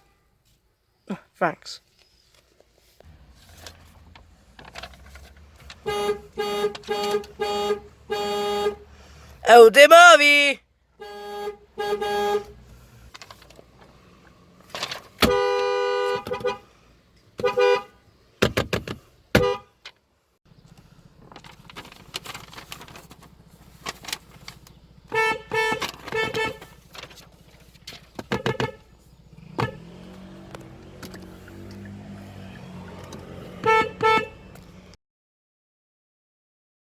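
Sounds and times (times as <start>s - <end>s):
car horn honking: 5.7s - 12.7s, 15.2s - 16.7s, 17.4s - 18.0s, 19.4s - 19.8s, 25.0s - 26.8s, 28.3s - 35.0s.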